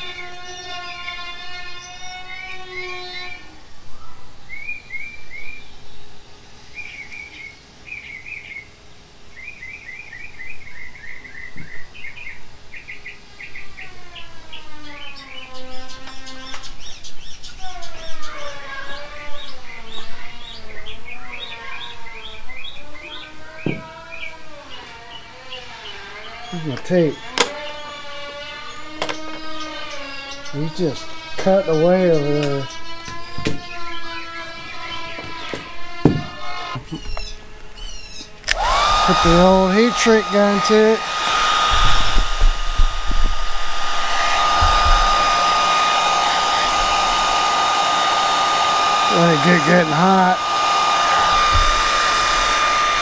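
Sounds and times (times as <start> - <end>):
small birds chirping: 0.0 - 53.0
heat gun blowing with whine: 38.4 - 53.0
low bumps: 41.0 - 49.1.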